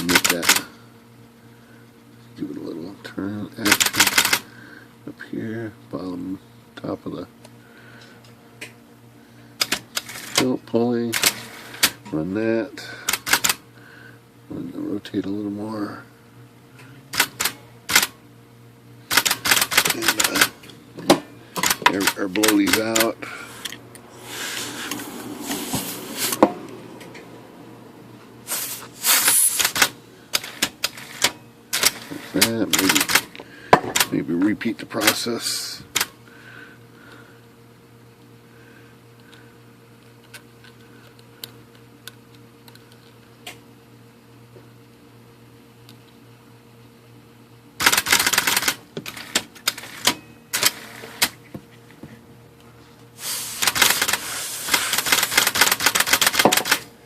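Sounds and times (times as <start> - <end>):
typewriter mechanism clacking: 0.0 - 0.7, 3.6 - 4.4, 11.1 - 12.0, 13.1 - 13.6, 17.1 - 18.1, 19.1 - 20.5, 21.6 - 23.2, 29.2 - 33.3, 47.8 - 51.3, 53.6 - 56.9
compressed air hissing: 23.2 - 27.2, 28.4 - 29.9, 53.2 - 55.2
steady hiss: 28.4 - 30.0, 53.1 - 55.3.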